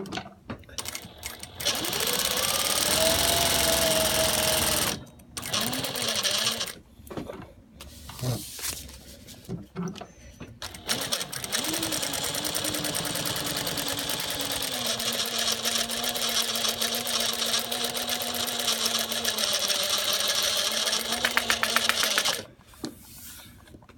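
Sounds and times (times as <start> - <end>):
sewing machine running: 0.8 - 6.8, 10.6 - 22.5.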